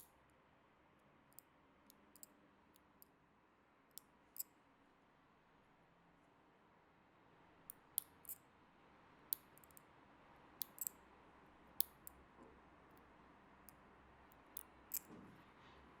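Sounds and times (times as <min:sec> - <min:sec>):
fingernails being clipped: 0:10.6 - 0:10.9, 0:14.6 - 0:15.1.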